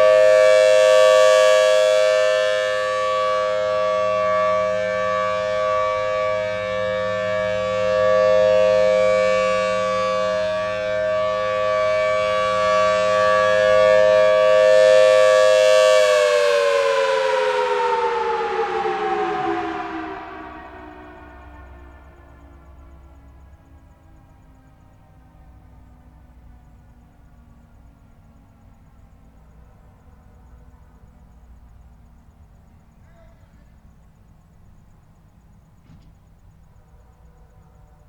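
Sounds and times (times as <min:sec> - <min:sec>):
warning siren steady tone: 0:00.0 - 0:38.0.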